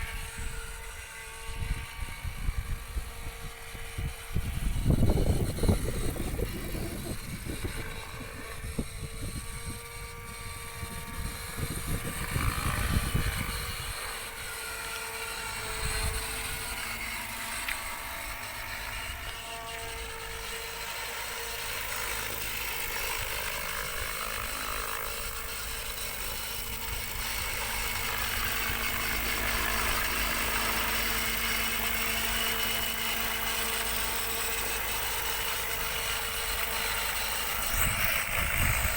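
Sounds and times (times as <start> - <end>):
wind rumble on microphone: 0.0 - 14.2, 37.6 - 38.9
helicopter rotor hum: 0.0 - 38.9.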